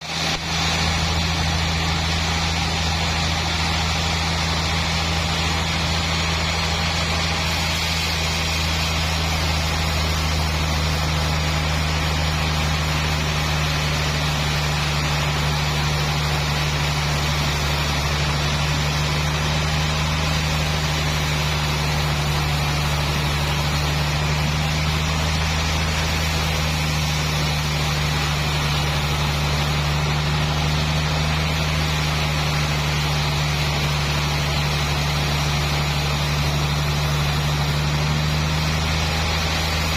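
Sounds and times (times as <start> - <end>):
hiss of noise: 0.0 - 39.9
sawmill machinery humming: 0.0 - 39.9.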